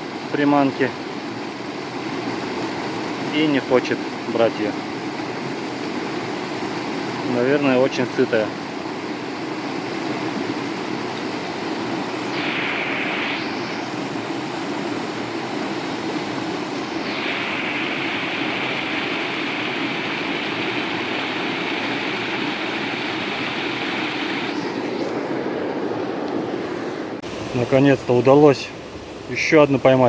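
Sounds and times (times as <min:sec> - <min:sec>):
waterfall rushing: 0:10.2 - 0:30.0
bright hiss: 0:12.0 - 0:15.4, 0:16.6 - 0:24.7, 0:27.2 - 0:30.0.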